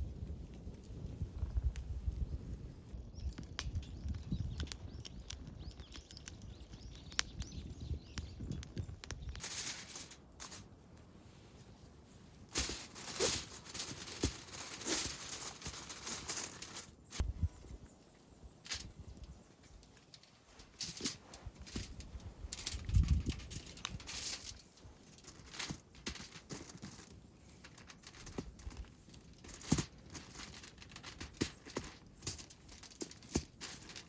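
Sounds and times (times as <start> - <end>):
low wind rumble: 0.0 - 25.1
gear rustling and crinkling: 8.8 - 17.2, 18.6 - 34.0.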